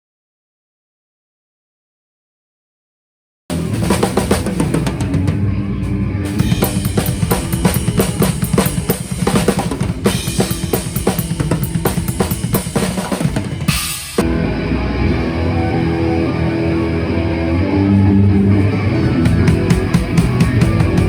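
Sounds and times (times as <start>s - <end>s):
drum kit played fast: 3.5s - 5.5s, 6.3s - 14.3s, 19.2s - 21.0s.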